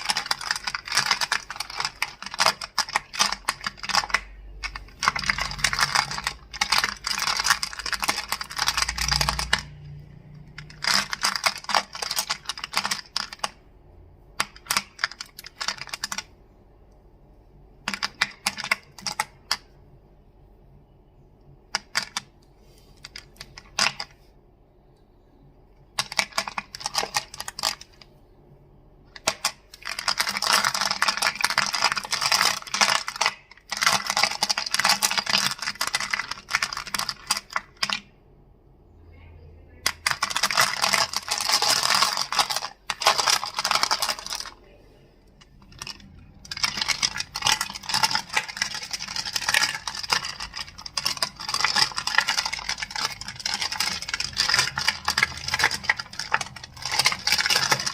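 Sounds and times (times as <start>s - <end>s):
crystals clicking and clacking: 0.0s - 13.6s, 29.1s - 38.0s, 39.8s - 44.6s, 45.4s - 57.9s.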